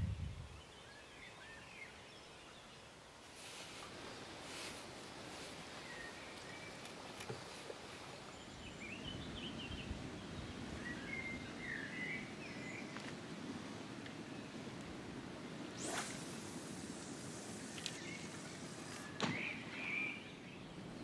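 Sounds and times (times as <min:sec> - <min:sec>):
steady rushing background noise: 0:15.0 - 0:19.2.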